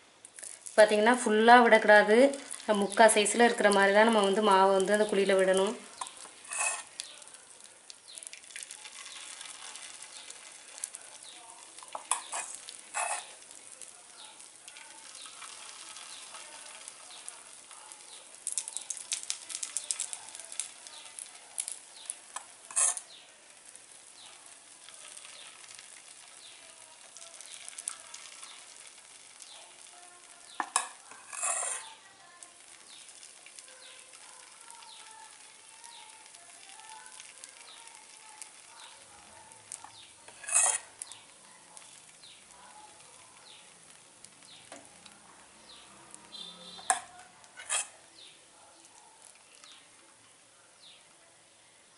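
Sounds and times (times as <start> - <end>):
batter sizzling in hot oil: 0.0 - 51.9.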